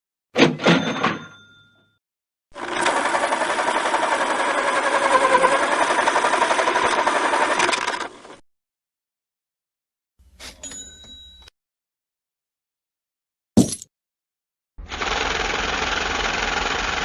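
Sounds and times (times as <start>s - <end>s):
banknote counting machine flutter: 2.5s - 8.4s, 14.8s - 17.0s.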